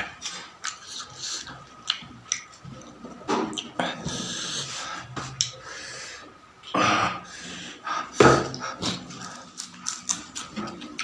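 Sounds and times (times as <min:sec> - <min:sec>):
person chewing and smacking food: 0:00.0 - 0:05.6, 0:08.4 - 0:11.0.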